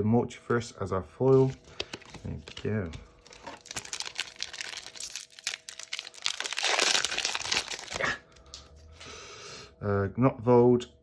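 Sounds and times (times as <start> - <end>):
foil wrapper crinkling and tearing: 1.4 - 8.7.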